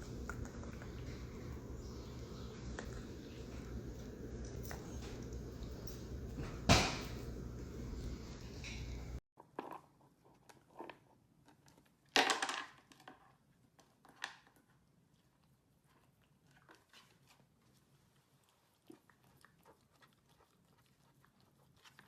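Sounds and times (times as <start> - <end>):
dog chewing something crunchy: 0.0 - 6.6, 15.8 - 22.0.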